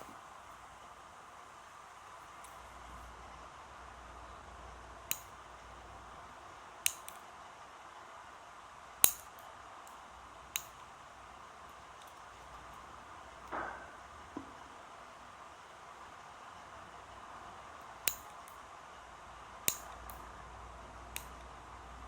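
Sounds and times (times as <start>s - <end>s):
fingernail clipper snips: 5.1s - 5.3s, 6.8s - 7.2s, 9.0s - 9.5s, 10.6s - 10.8s, 18.1s - 18.6s, 19.7s - 20.2s, 21.1s - 21.4s.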